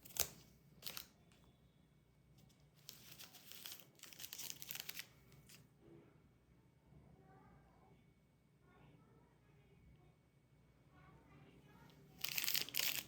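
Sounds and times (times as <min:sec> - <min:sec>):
candy wrapper crinkling: 0:00.0 - 0:01.2, 0:02.8 - 0:05.6, 0:12.2 - 0:13.0.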